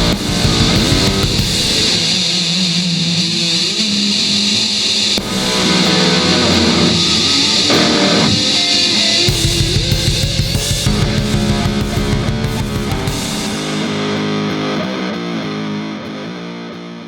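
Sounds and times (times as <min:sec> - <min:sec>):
fast low guitar chugging: 0:00.0 - 0:02.0, 0:05.2 - 0:08.5, 0:09.3 - 0:14.5
bass guitar: 0:00.0 - 0:02.2, 0:05.2 - 0:16.4
drums: 0:00.0 - 0:16.3
electric guitar: 0:00.0 - 0:17.0.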